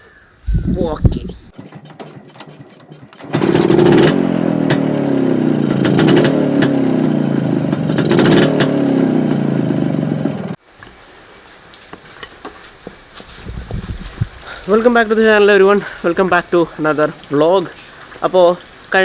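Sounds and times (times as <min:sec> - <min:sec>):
motorcycle engine revving: 0:01.6 - 0:10.6.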